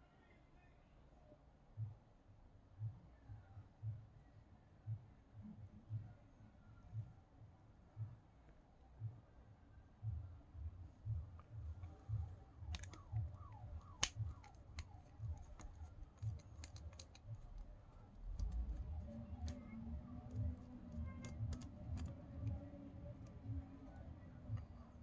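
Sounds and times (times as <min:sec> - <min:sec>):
metal clicks and taps: 0:12.7 - 0:13.1, 0:13.8 - 0:17.4.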